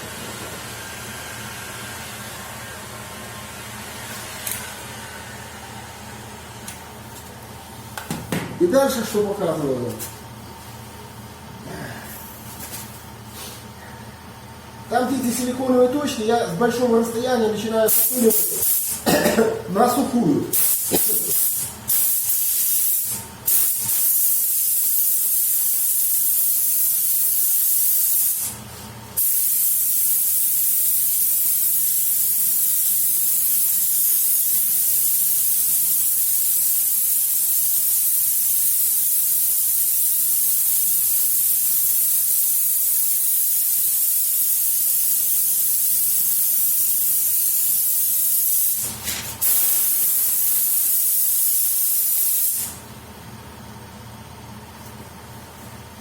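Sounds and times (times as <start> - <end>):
paint spray gun hissing: 17.9 - 19.0, 20.5 - 28.6, 29.2 - 52.8.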